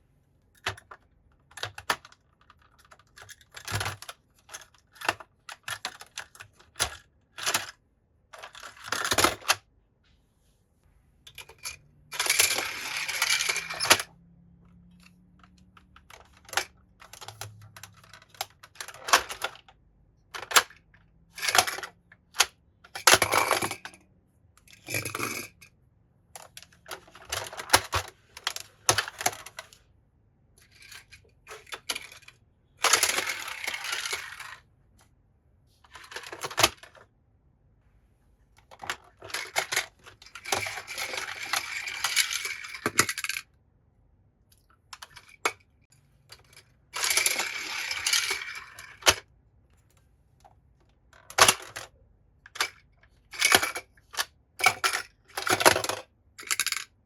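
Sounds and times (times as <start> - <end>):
toy cars clattering on plastic track: 0.6 - 7.8, 8.4 - 9.6, 11.3 - 14.1, 14.8 - 19.7, 20.3 - 24.0, 24.6 - 25.7, 26.4 - 29.8, 30.6 - 34.7, 35.9 - 37.0, 38.6 - 43.5, 46.2 - 49.3, 51.1 - 57.0
toy cars rolling along track: 8.4 - 9.6, 11.3 - 19.7, 20.4 - 24.0, 26.4 - 29.8, 30.6 - 34.7, 35.9 - 37.0, 38.6 - 43.5, 46.2 - 49.3, 52.5 - 56.9.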